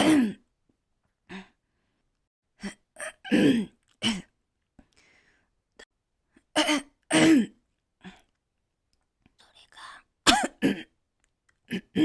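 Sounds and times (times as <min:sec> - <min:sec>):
girl coughing and gasping: 0:00.0 - 0:00.4, 0:02.6 - 0:04.3, 0:06.5 - 0:07.6, 0:10.2 - 0:11.0.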